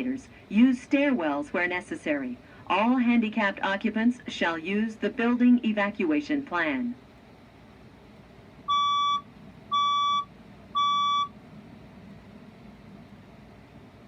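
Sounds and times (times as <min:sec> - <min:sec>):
fire alarm beeps: 0:08.7 - 0:11.4.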